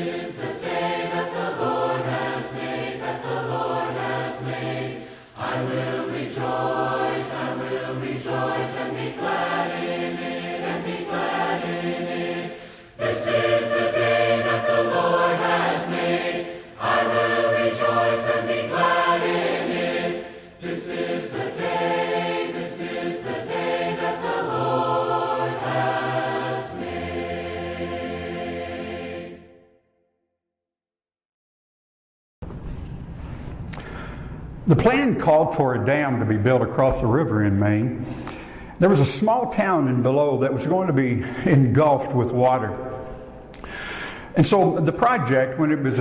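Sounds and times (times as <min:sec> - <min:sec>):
voices singing a hymn: 0:00.0 - 0:29.8.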